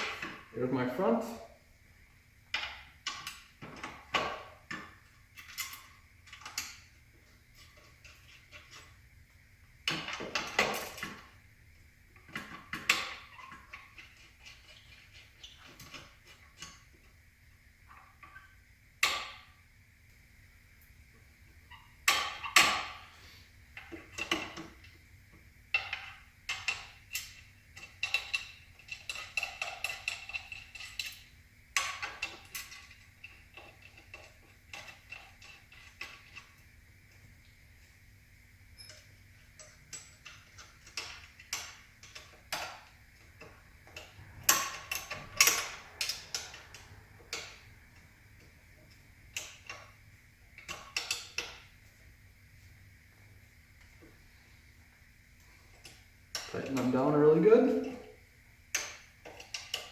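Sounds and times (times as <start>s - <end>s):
metal bolts clicking and clinking: 2.5s - 9.0s, 9.8s - 11.4s, 12.2s - 17.2s, 21.7s - 23.2s, 23.8s - 37.3s, 38.7s - 52.6s, 55.4s - 59.9s.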